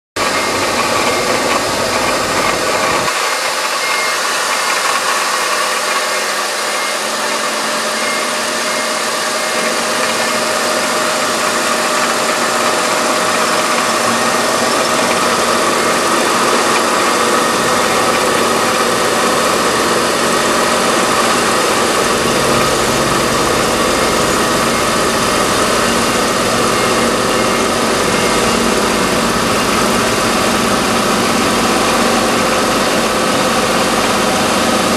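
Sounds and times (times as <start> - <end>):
car engine idling: 0.2 - 3.1, 8.0 - 34.9.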